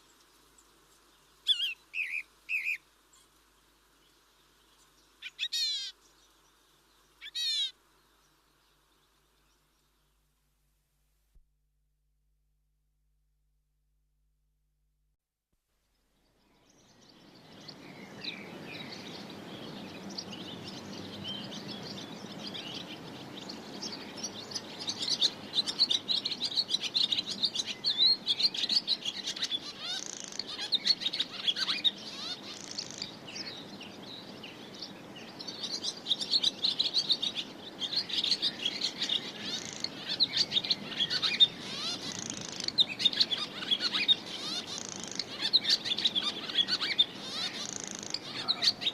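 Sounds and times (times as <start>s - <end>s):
small birds chirping chorus: 0.0s - 10.3s, 15.9s - 48.9s
low background noise: 0.0s - 11.4s, 15.6s - 48.9s.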